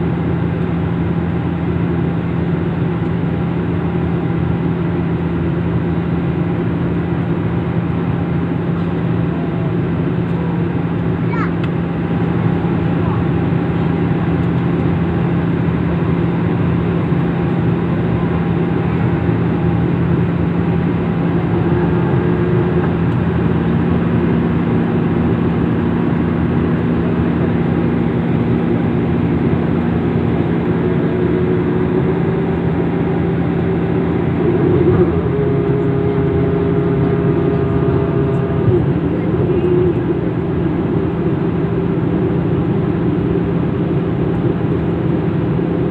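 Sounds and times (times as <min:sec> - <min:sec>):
vehicle drone: 0:00.0 - 0:45.9.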